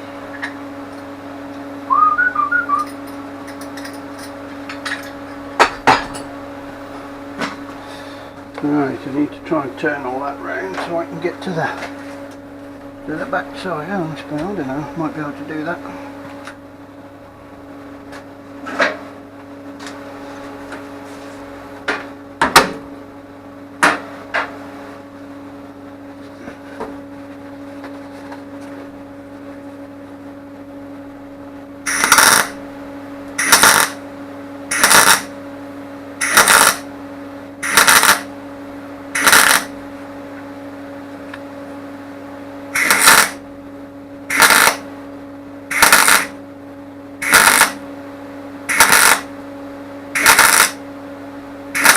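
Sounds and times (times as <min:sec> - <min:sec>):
steady electrical hum: 0:00.0 - 0:51.9
welding bursts: 0:31.9 - 0:32.6, 0:33.4 - 0:34.0, 0:34.7 - 0:35.3, 0:36.2 - 0:36.9, 0:37.6 - 0:38.3, 0:39.2 - 0:39.7, 0:42.8 - 0:43.4, 0:44.3 - 0:44.8, 0:45.7 - 0:46.4, 0:47.2 - 0:47.8, 0:48.7 - 0:49.3, 0:50.2 - 0:50.8.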